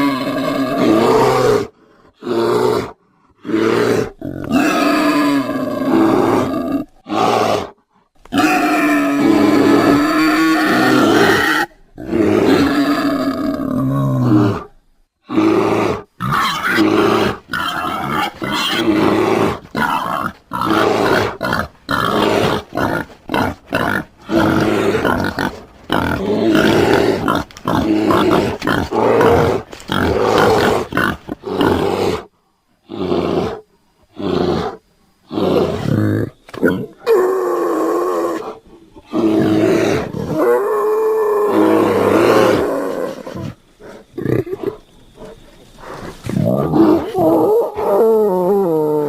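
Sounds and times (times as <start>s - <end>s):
creature roaring and growling: 0.0s - 7.8s, 8.4s - 14.7s.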